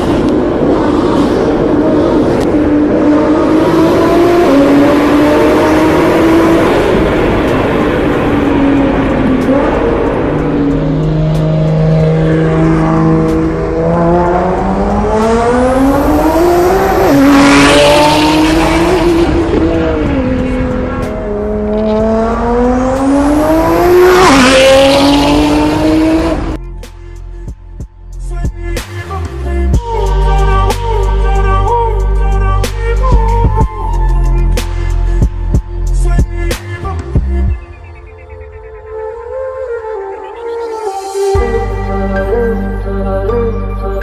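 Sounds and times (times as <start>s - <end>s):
car engine revving: 0.0s - 26.6s.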